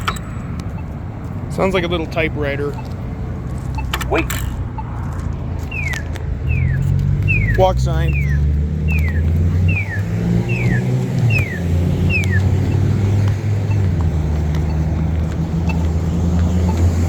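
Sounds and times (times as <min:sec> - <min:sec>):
vehicle engines idling: 0:00.0 - 0:17.0
falling electronic chirp: 0:05.7 - 0:13.0.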